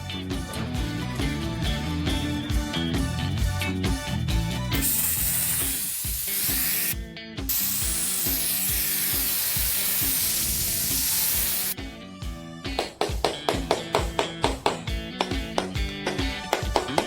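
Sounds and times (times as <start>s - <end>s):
background music: 0.0s - 17.0s
loud hissing spray: 4.8s - 11.8s.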